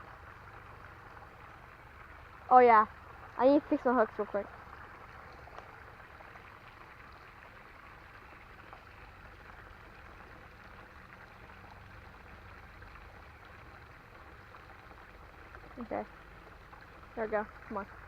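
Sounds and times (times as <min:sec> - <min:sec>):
creek water running: 0:00.0 - 0:18.0.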